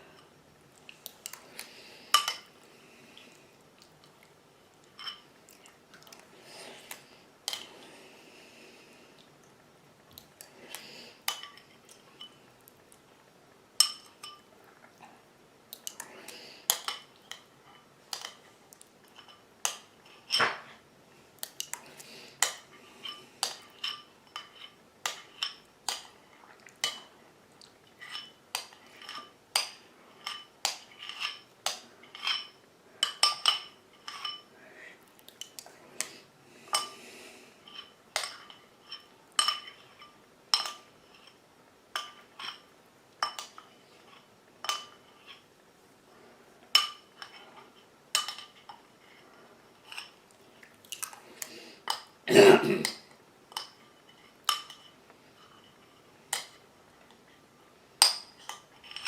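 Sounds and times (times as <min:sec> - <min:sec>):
cutlery clinking against crockery: 0:37.7 - 0:41.4, 0:46.8 - 0:48.8, 0:52.8 - 0:56.6.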